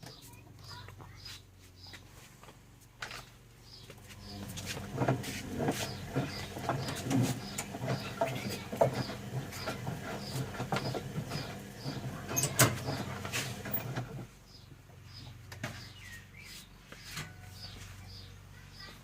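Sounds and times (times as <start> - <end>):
washing machine motor hum: 3.8 - 16.4
laundry tumbling and knocking: 4.4 - 14.2.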